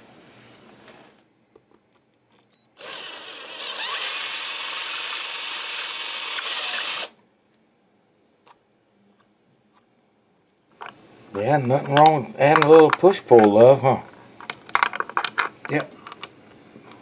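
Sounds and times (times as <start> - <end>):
electric power tool whining: 2.8 - 7.1.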